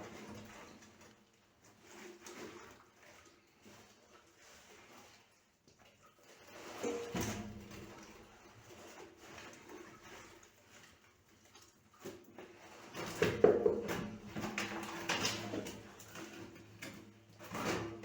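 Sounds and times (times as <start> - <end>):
hand tools scraping and knocking: 12.9 - 18.0.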